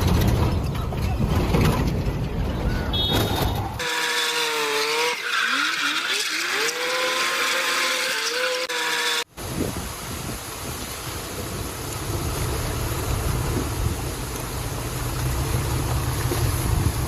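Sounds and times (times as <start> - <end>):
loud vehicle rumbling: 0.0 - 9.7, 11.0 - 17.0.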